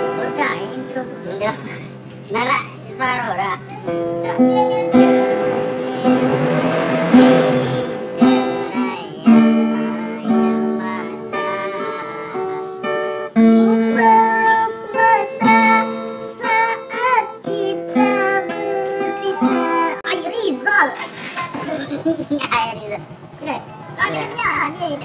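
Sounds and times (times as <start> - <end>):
acoustic guitar playing: 0.0 - 21.3
person singing: 4.4 - 12.8, 13.5 - 20.0.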